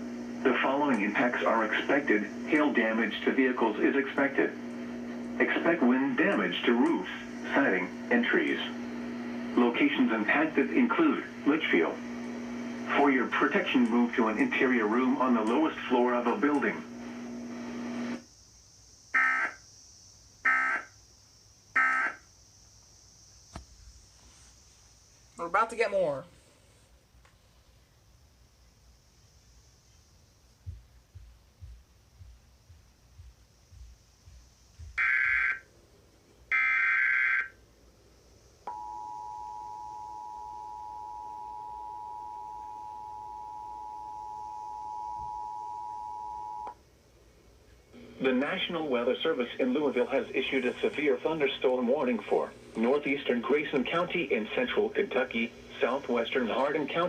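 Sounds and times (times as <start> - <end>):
steady two-tone attention signal: 38.7 - 46.7.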